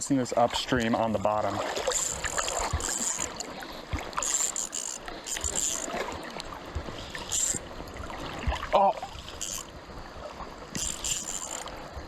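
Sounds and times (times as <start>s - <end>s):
river water rushing: 0.0s - 12.0s.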